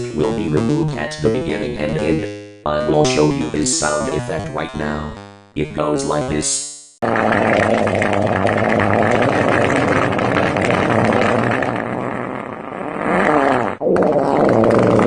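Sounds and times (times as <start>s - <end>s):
sputtering fart noises: 7.0s - 15.0s.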